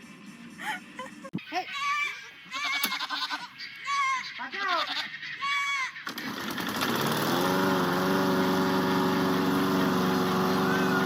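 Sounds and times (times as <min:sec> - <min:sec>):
goat bleating: 0:01.5 - 0:06.0
engine running: 0:06.0 - 0:11.0.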